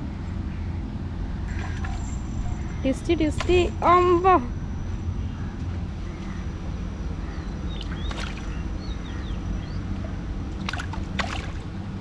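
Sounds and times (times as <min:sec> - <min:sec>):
low rumble: 0:00.0 - 0:12.0
water sloshing and splashing: 0:01.5 - 0:04.0, 0:07.7 - 0:08.9, 0:09.8 - 0:12.0.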